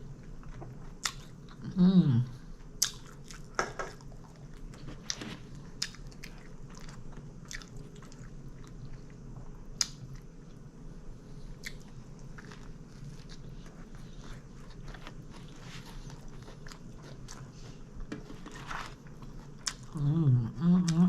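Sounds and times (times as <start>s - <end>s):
steady low hum: 0.0s - 21.0s
chewing and biting sandwich: 11.5s - 20.0s.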